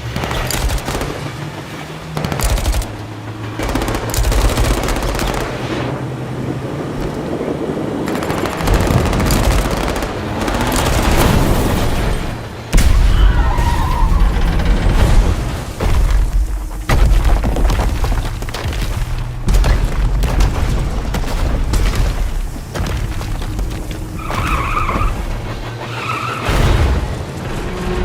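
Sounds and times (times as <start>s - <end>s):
crashing metal impacts: 8.8s - 28.0s.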